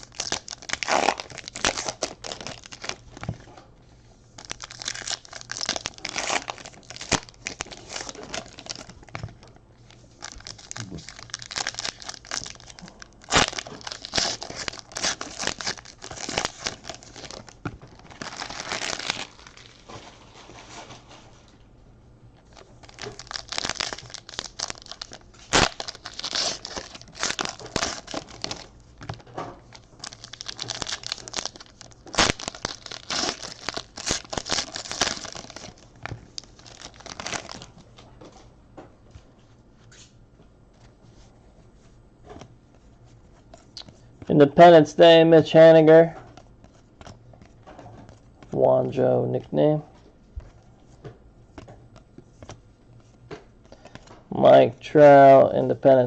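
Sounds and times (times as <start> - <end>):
wrappers tearing and crinkling: 0.0 - 3.2, 4.4 - 9.2, 9.9 - 21.2, 22.4 - 37.8.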